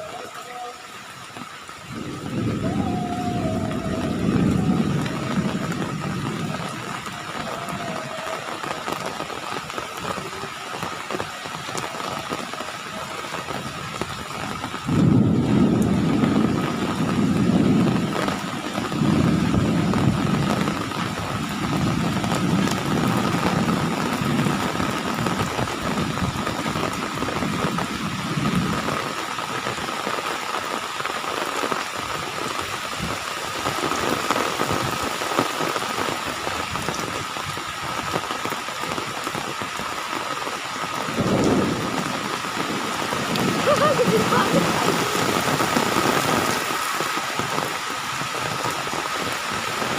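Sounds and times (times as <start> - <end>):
heavy rain hissing: 0.0 - 49.9
thunder rumbling: 1.9 - 29.4, 40.9 - 46.8.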